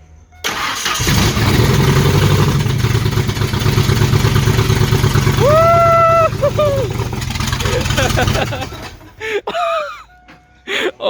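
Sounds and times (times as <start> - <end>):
car engine idling loudly: 1.0 - 9.2
person shouting: 5.4 - 7.0.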